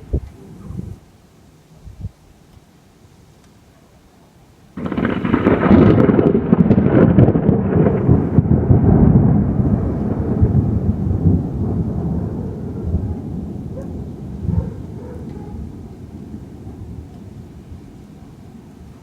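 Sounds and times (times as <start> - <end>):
thunderclap with rolling rumble: 4.8 - 19.0.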